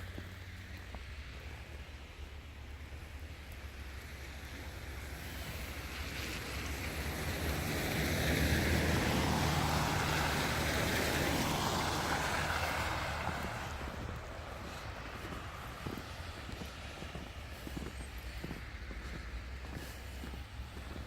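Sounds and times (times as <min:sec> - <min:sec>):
tyre hiss on slush: 0:05.1 - 0:13.8.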